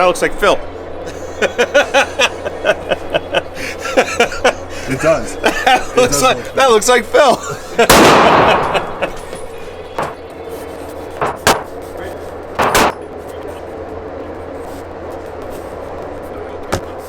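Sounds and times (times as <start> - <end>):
steady background hum: 0.0 - 17.0
gunshots: 7.8 - 9.1, 11.2 - 11.8, 12.6 - 13.0.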